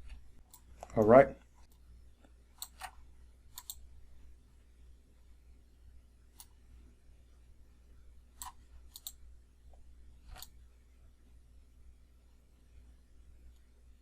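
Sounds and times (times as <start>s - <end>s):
computer mouse clicks: 0.0s - 1.0s, 1.6s - 3.8s, 6.4s - 6.6s, 8.4s - 9.2s, 10.2s - 10.6s.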